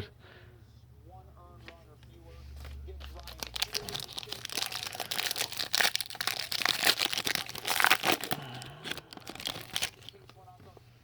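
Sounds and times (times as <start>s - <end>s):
foil wrapper tearing and crinkling: 3.2s - 10.3s.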